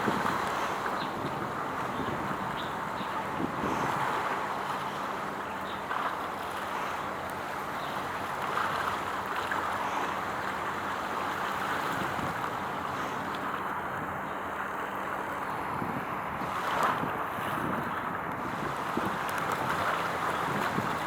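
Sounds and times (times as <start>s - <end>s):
wind on microphone: 0.0s - 4.3s, 15.5s - 21.0s
water wash: 0.0s - 21.0s.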